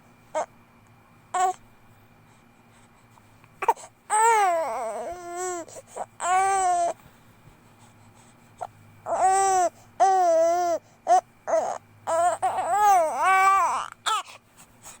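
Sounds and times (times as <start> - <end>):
infant crying: 3.6 - 7.0, 9.1 - 14.4.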